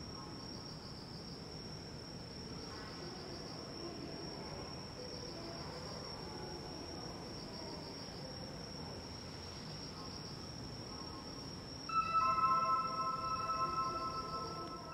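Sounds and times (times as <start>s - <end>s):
crickets trilling: 0.0s - 14.9s
electronic chime: 11.9s - 14.9s.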